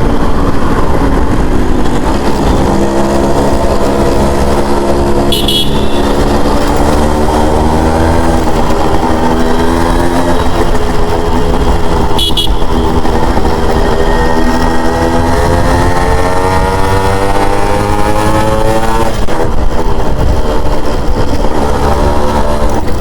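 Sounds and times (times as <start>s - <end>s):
motorcycle engine accelerating: 0.0s - 23.0s
high-pitched horn toot: 5.2s - 6.4s, 12.2s - 13.0s.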